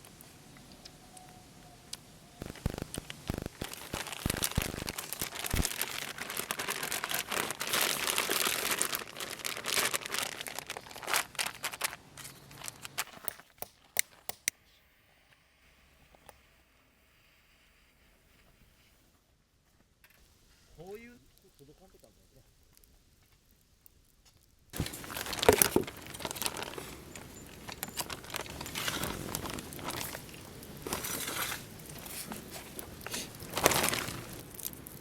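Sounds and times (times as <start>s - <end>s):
crinkling and rustling: 2.4s - 14.3s, 24.2s - 35.0s.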